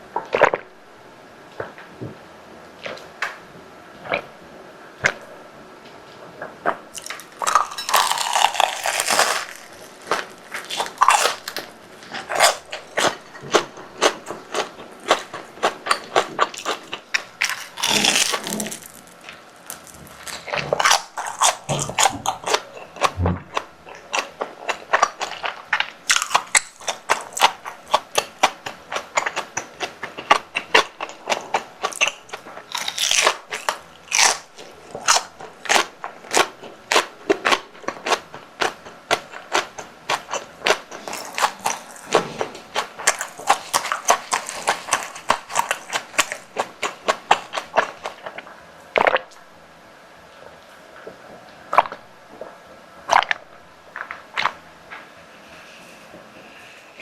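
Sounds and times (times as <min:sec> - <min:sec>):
crunchy bites and chewing: 0:06.6 - 0:49.4.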